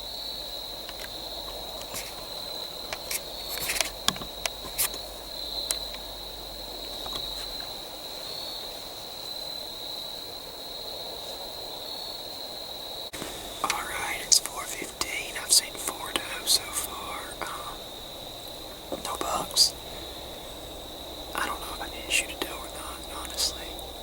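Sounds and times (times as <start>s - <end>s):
crickets chirping: 0.0s - 24.0s
faint clicks and rustles: 0.8s - 6.1s.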